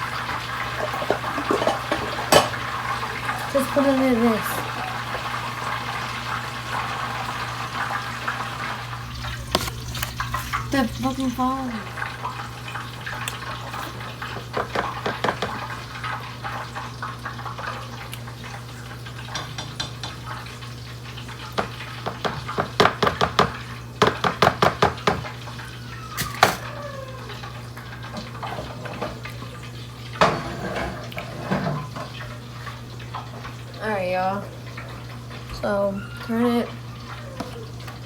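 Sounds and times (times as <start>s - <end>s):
utensils and dishes clattering: 0.0s - 6.0s, 6.7s - 12.1s, 12.7s - 16.5s, 19.2s - 20.6s, 21.4s - 33.7s.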